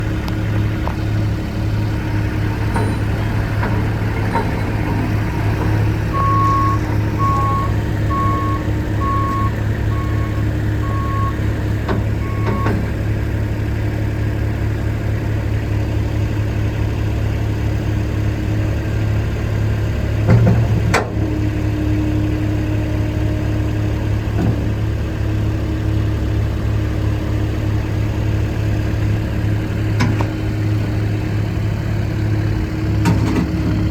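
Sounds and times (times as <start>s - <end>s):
diesel engine running: 0.0s - 33.9s
reverse alarm beeping: 6.1s - 11.4s.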